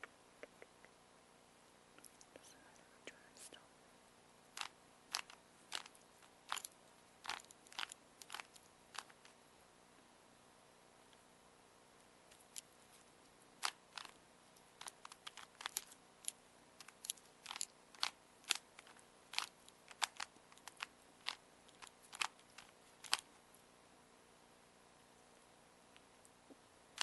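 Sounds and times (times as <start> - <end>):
plastic puzzle cube clicking: 4.6 - 6.7, 7.3 - 9.3, 13.6 - 14.2, 14.8 - 23.3.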